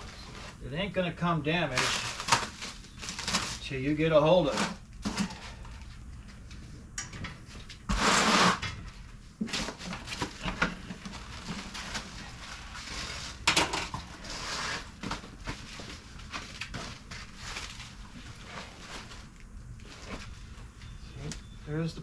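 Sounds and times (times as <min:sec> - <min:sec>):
packing material rustling: 0:01.6 - 0:05.6, 0:09.5 - 0:13.4, 0:14.1 - 0:20.5.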